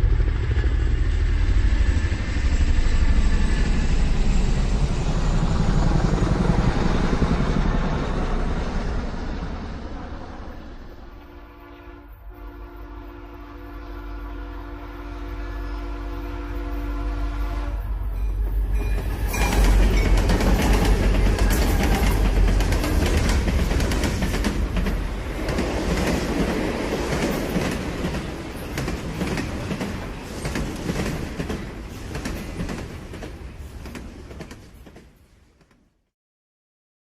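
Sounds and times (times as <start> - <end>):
train wheels clacking over rails: 18.1 - 35.8.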